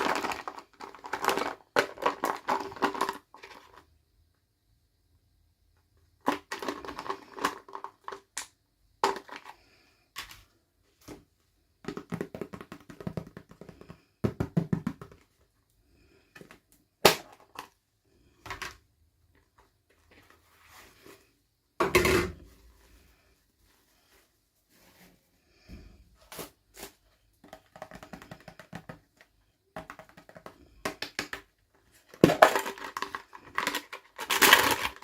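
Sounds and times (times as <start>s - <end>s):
plastic packaging crinkling: 0.0s - 3.7s, 32.2s - 35.0s.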